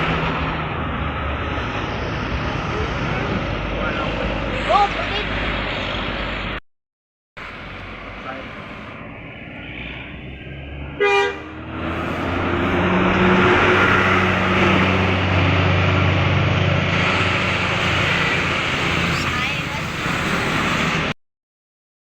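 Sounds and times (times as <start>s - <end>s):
bus engine passing: 0.0s - 6.6s, 7.4s - 21.2s
short horn toot: 11.0s - 11.6s.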